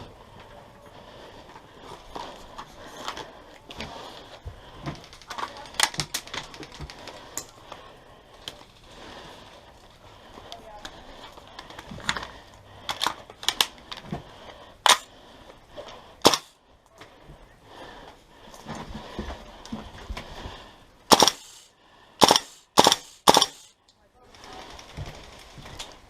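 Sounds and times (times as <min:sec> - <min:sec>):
airsoft gun shots: 0:14.9 - 0:15.1, 0:16.2 - 0:16.5, 0:21.1 - 0:21.6, 0:22.2 - 0:23.7.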